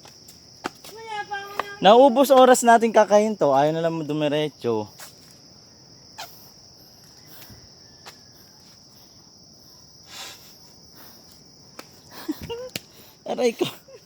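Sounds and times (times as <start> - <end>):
insects droning: 0.0 - 14.0.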